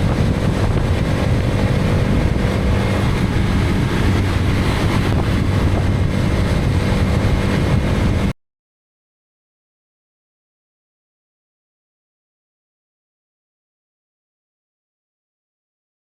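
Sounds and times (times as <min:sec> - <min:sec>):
motorcycle engine running: 0:00.0 - 0:08.3
road and air noise: 0:00.0 - 0:08.3.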